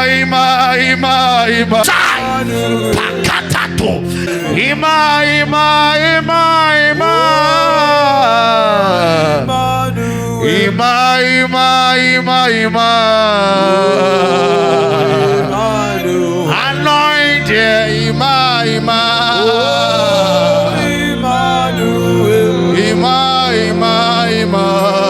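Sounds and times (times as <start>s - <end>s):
sustained backing music: 0.0s - 25.0s
man singing held notes: 1.6s - 10.8s.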